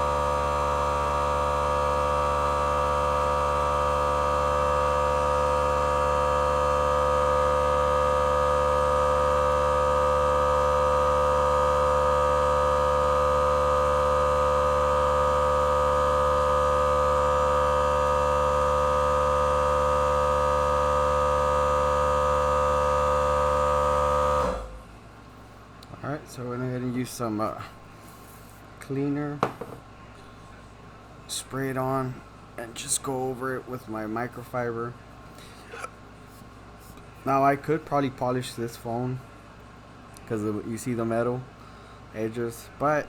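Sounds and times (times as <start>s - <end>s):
electric air blower whining: 0.0s - 24.9s.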